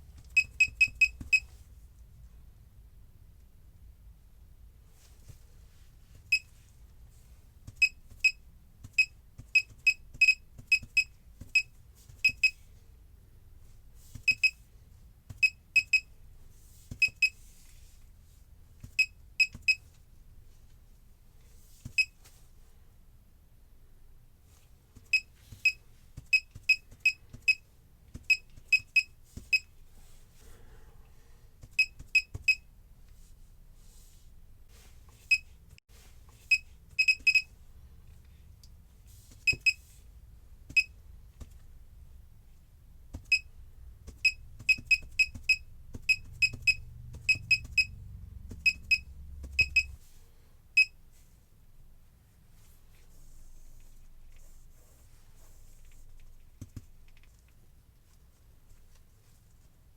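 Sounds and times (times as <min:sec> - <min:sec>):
electronic key-press beeps: 0:00.3 - 0:01.5, 0:07.8 - 0:12.6, 0:14.3 - 0:14.6, 0:15.4 - 0:16.1, 0:17.0 - 0:17.4, 0:18.9 - 0:19.8, 0:25.1 - 0:27.6, 0:28.2 - 0:29.7, 0:31.8 - 0:32.6, 0:36.5 - 0:37.5, 0:39.5 - 0:39.9, 0:40.7 - 0:41.0, 0:43.2 - 0:43.5, 0:44.1 - 0:50.0.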